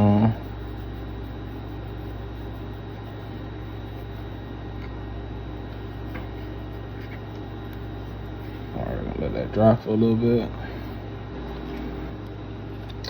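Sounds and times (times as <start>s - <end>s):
room hum and hiss: 0.0s - 13.0s.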